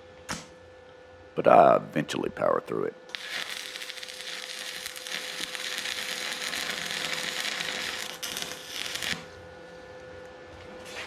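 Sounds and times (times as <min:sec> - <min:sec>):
steady hiss: 0:03.1 - 0:09.3
welding arc crackling: 0:03.1 - 0:09.4.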